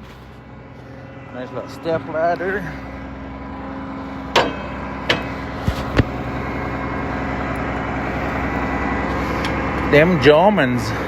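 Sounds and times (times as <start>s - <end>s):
tractor engine running: 0.0s - 11.0s
sharp metallic knocks: 4.3s - 5.4s.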